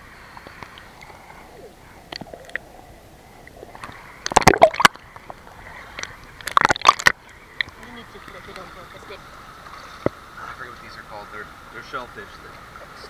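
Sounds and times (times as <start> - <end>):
seawater sloshing and lapping: 0.3 - 7.9
loud splashes and knocks: 6.4 - 7.2.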